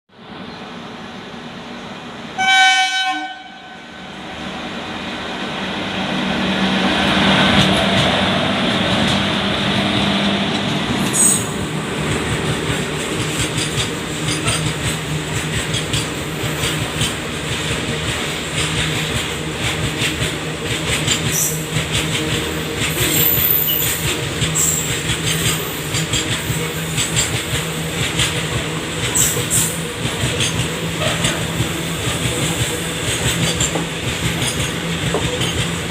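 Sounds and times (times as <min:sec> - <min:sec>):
train horn blast: 0:02.4 - 0:04.1
train wheels clicking over rail joints: 0:07.1 - 0:35.9.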